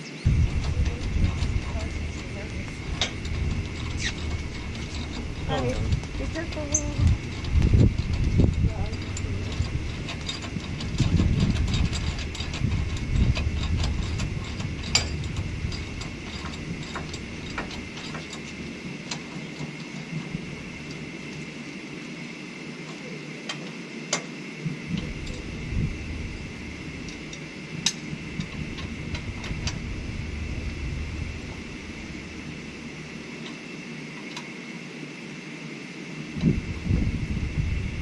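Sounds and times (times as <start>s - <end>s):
ratchet clicking: 0.3s - 20.0s
hand tools clicking on metal: 0.5s - 21.5s.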